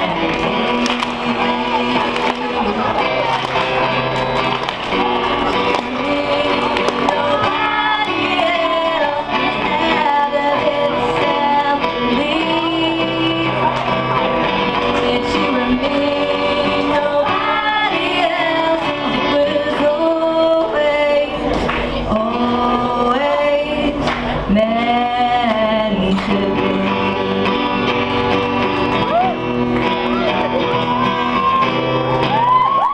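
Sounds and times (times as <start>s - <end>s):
man and woman singing: 0.0s - 3.0s, 5.6s - 13.9s, 14.8s - 27.7s
guitar accompaniment: 0.0s - 32.9s.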